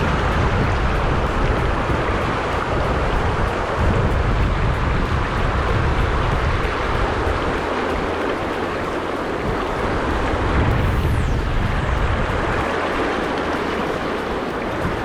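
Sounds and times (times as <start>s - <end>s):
low uneven rumble: 0.0s - 15.0s
river current rushing: 0.0s - 15.0s.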